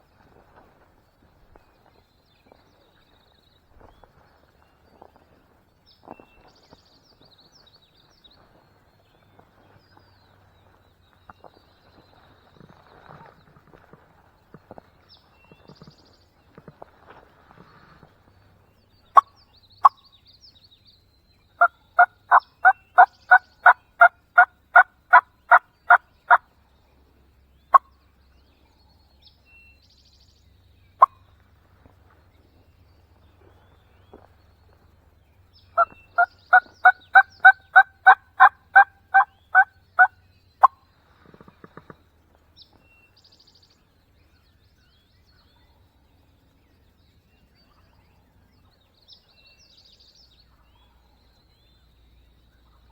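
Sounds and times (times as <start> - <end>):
turkey yelping: 22.0 - 25.2, 35.8 - 39.7.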